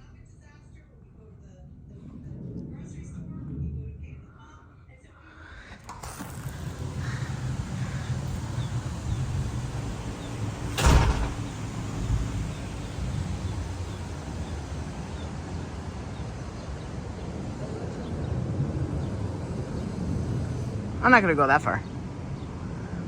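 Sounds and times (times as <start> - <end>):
low outdoor rumble: 0.0 - 23.0
loud sharp thump: 10.8 - 11.6.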